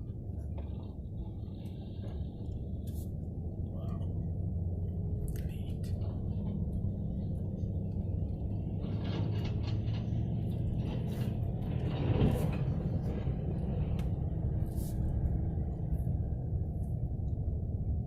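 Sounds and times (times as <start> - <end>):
vehicle engine rumbling: 0.0 - 18.0
clattering: 7.9 - 14.2.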